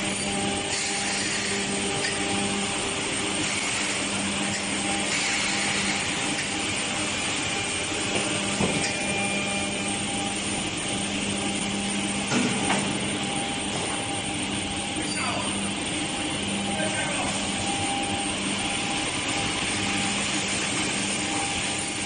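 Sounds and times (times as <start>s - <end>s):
woodworking machinery humming: 0.0s - 22.0s.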